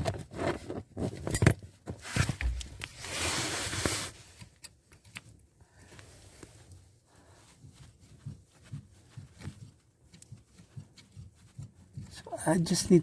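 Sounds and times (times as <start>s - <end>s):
rustle: 2.0s - 4.4s
small clicks and knocks: 4.3s - 6.5s.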